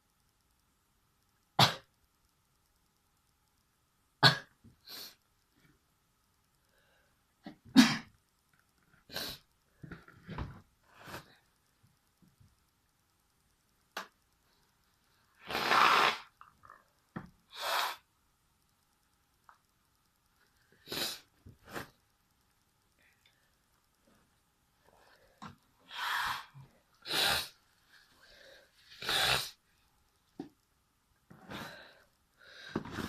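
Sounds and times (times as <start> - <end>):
person sneezing: 7.7 - 8.1.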